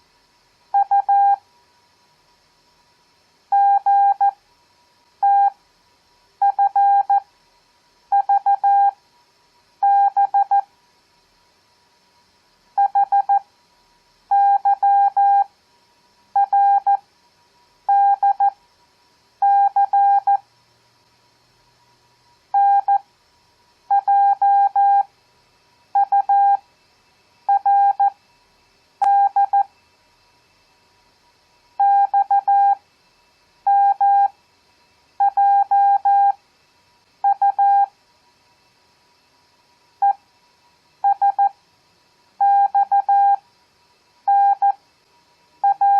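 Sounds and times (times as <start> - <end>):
morse code tone: 3.6 - 4.3, 6.5 - 7.2, 27.5 - 28.1, 29.0 - 29.7, 37.3 - 37.9, 44.3 - 44.8.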